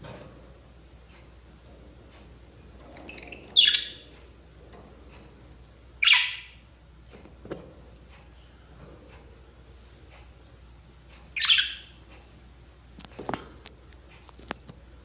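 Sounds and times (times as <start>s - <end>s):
parrot squawking: 3.1s - 4.0s, 6.0s - 6.6s, 11.4s - 11.9s.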